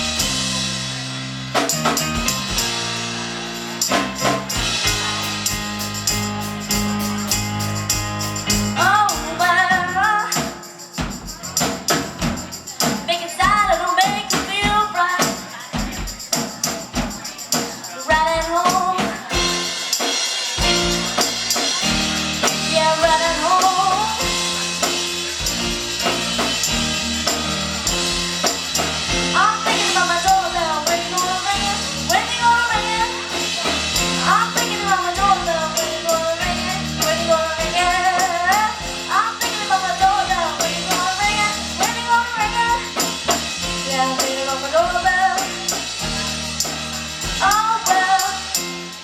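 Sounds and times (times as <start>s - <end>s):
bass and backing music: 0.0s - 49.0s
tambourine beat: 0.0s - 49.0s
person singing: 8.8s - 11.7s, 17.3s - 25.6s, 29.1s - 49.0s.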